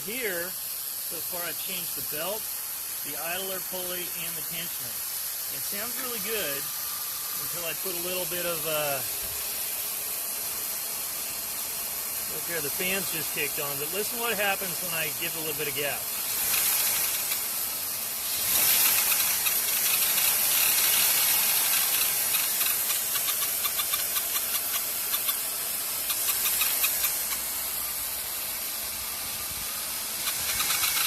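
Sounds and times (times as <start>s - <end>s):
radiator fan running: 0.0s - 31.0s
rapid ticks: 16.5s - 17.5s, 18.6s - 27.5s, 30.2s - 31.0s.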